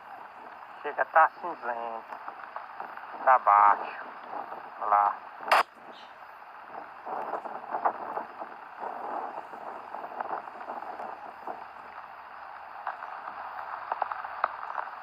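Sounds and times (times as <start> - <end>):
rain hissing: 0.0 - 15.0
raindrops tapping on microphone: 6.7 - 15.0.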